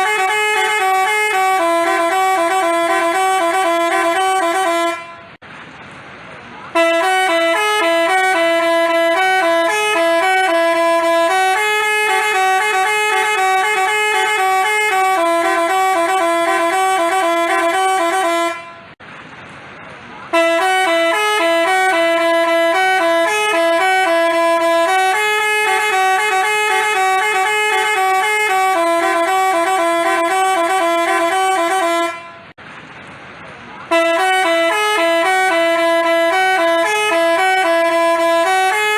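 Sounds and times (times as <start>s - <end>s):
multi-tone horn playing a tune: 0.0s - 5.4s, 6.7s - 19.0s, 20.3s - 32.5s, 33.9s - 38.9s.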